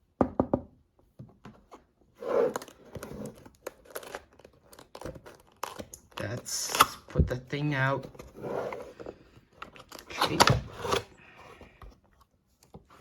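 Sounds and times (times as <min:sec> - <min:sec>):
packaging crinkling and rustling: 0:02.6 - 0:07.2, 0:08.9 - 0:11.2.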